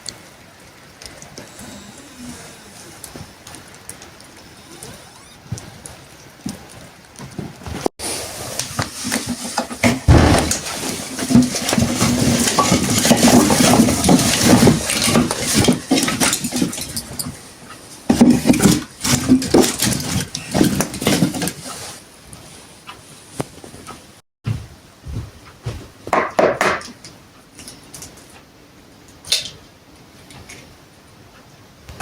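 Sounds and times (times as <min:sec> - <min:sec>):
animal sounds: 0:01.0 - 0:06.8
clatter of clicks and knocks: 0:09.0 - 0:17.4.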